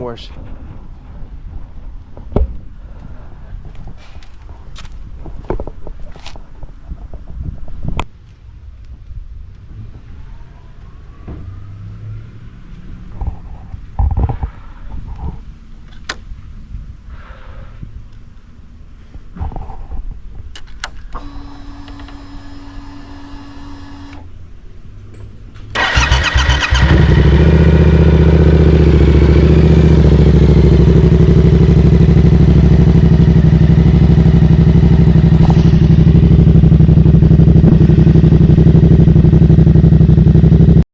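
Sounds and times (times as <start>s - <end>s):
motorcycle engine starting and idling: 20.6s - 24.4s, 25.1s - 40.8s.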